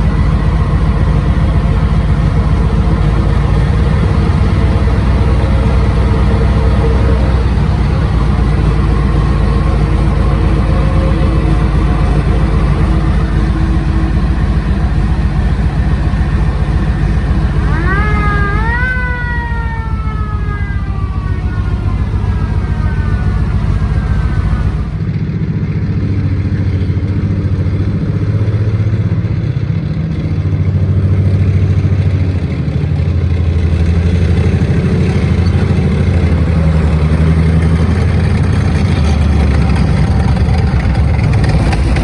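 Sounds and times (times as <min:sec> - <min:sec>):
siren winding up and down: 0:00.0 - 0:25.1
tank engine running: 0:00.0 - 0:42.0.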